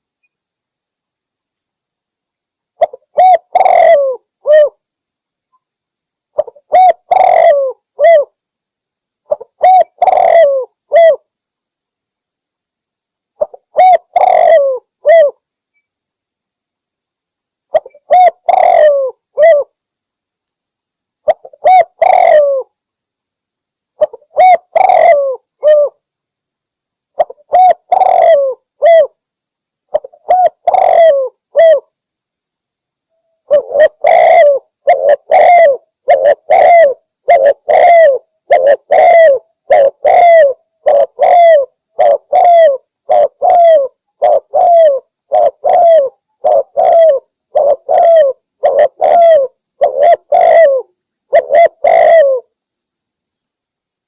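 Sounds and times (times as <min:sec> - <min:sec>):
dove cooing: 0:02.8 - 0:04.8, 0:06.4 - 0:08.4, 0:09.3 - 0:11.2, 0:13.4 - 0:15.4, 0:17.7 - 0:19.7, 0:21.3 - 0:22.7, 0:24.0 - 0:26.0, 0:27.2 - 0:29.2, 0:29.9 - 0:31.9, 0:33.5 - 0:52.5.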